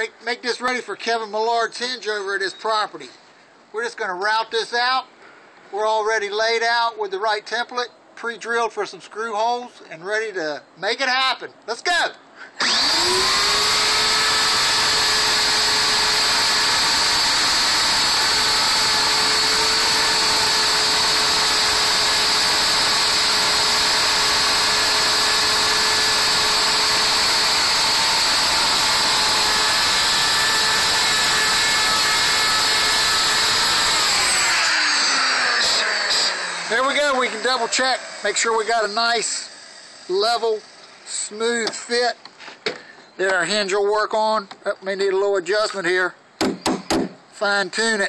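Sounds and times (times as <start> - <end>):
wood router motor whine: 12.6 - 38.7, 39.4 - 41.0.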